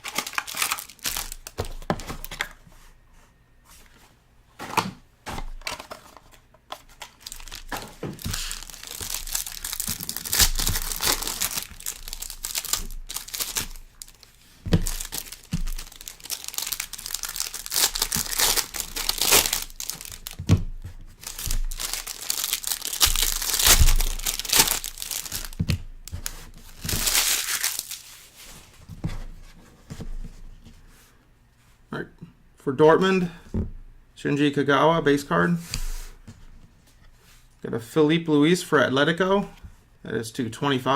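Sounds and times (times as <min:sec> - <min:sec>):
plastic wrapping crinkling and tearing: 0:00.0 - 0:02.6, 0:05.6 - 0:28.4.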